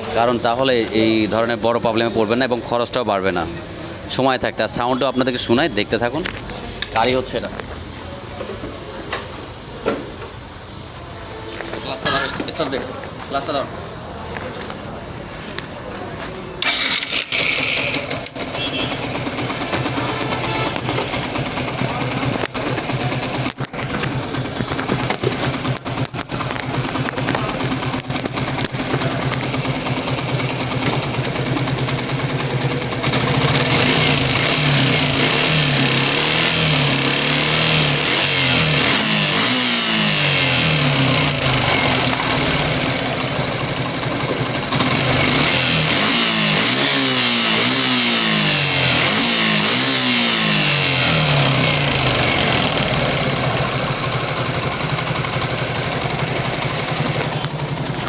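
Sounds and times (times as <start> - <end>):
engine rattling: 16.6 - 58.0
motorcycle engine idling and revving: 16.6 - 58.0.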